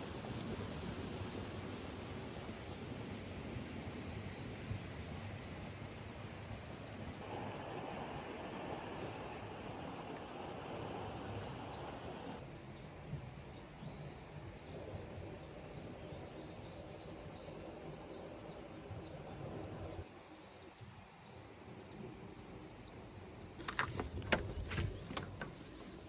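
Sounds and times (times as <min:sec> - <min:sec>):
birds chirping: 0:23.6 - 0:26.0.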